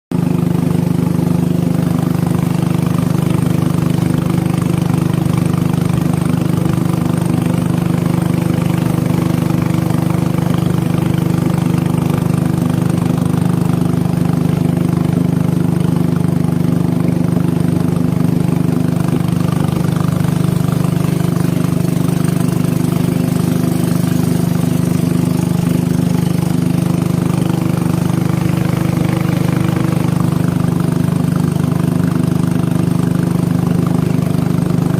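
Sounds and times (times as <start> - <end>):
boat engine humming: 0.1 - 34.9.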